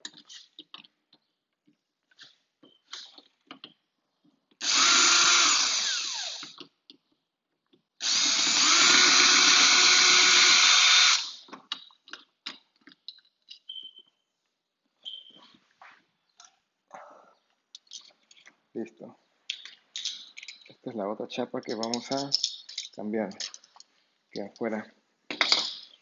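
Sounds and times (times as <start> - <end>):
clicks and knocks of handling hardware: 0.0 - 4.6, 11.5 - 14.1, 19.5 - 20.8, 21.6 - 24.7
power drill running: 4.6 - 6.6, 8.0 - 11.5.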